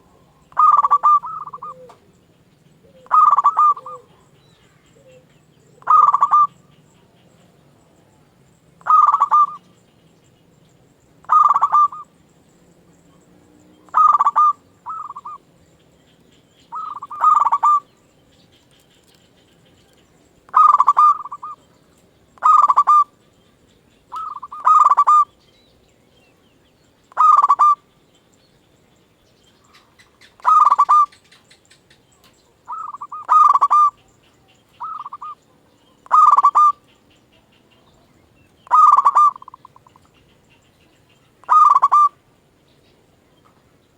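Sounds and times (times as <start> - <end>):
dove cooing: 0.0 - 2.1, 2.8 - 6.7, 8.8 - 9.6, 11.2 - 12.0, 13.9 - 15.4, 16.7 - 17.9, 20.5 - 21.6, 22.4 - 23.2, 24.1 - 25.3, 27.1 - 27.8, 29.8 - 31.7, 32.7 - 34.1, 34.7 - 37.8, 38.6 - 40.1, 41.4 - 42.2.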